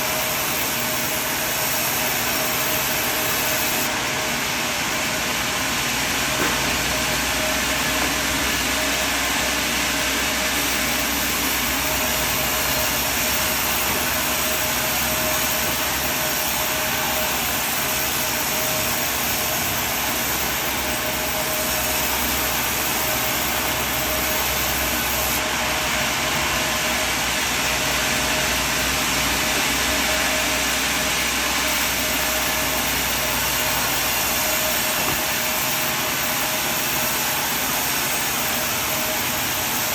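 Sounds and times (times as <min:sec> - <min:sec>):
sawmill machinery whining: 0:00.0 - 0:39.9.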